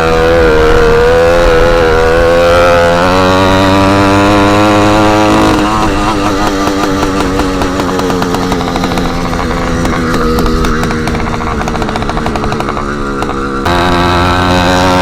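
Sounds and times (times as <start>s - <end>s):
small engine running loud: 0.0s - 15.0s.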